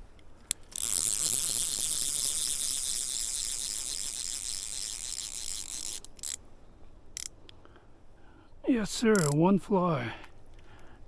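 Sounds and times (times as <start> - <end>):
high insect buzz: 0.7 - 6.3
short clicks: 9.1 - 9.4.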